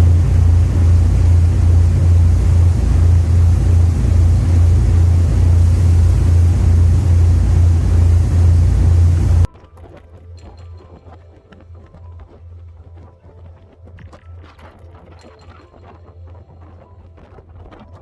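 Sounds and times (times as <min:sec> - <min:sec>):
ferry engines droning: 0:00.0 - 0:09.5
rushing water: 0:00.0 - 0:09.5
wind: 0:00.0 - 0:09.5.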